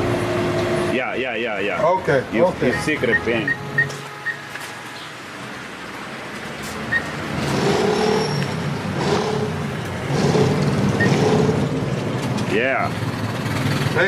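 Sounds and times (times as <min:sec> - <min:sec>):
short electronic beeps: 0:02.6 - 0:04.5, 0:06.9 - 0:07.1
vehicle engine running: 0:06.9 - 0:14.0.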